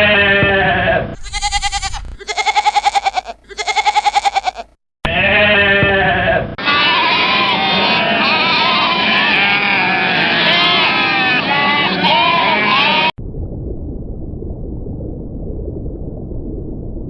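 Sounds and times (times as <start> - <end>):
animals bleating: 1.2 - 13.1.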